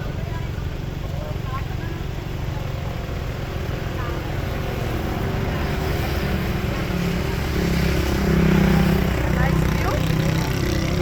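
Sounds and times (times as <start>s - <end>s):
faint voices: 0.0s - 6.0s
road noise: 0.0s - 11.0s
vehicle engine rumble: 0.0s - 11.0s.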